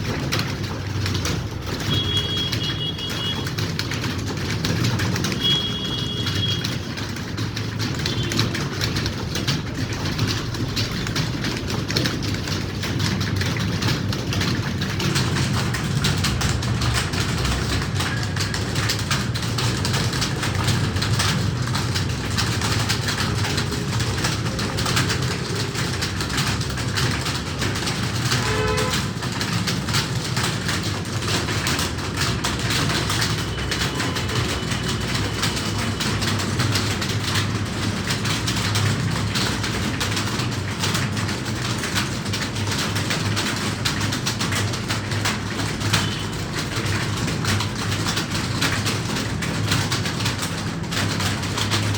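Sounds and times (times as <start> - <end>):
keyboards typing clatter: 0.0 - 51.9.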